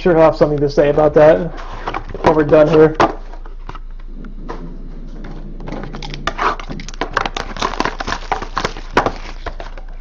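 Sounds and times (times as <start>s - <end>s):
card packaging crinkling: 5.7s - 10.0s
packaging clicks: 5.7s - 10.0s.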